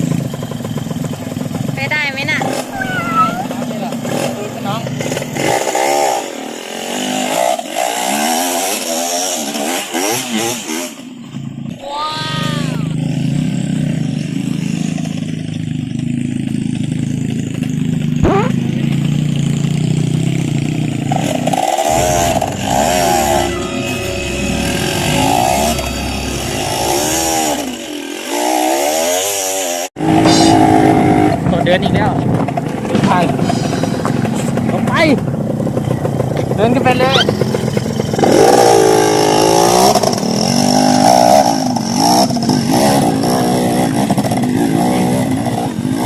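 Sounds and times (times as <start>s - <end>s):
dirt bike engines revving: 0.0s - 46.0s.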